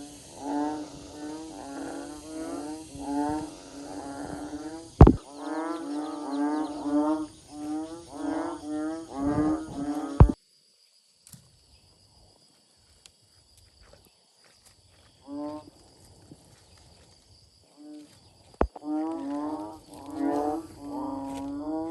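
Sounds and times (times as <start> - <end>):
sharp knocks: 5.0 - 5.2.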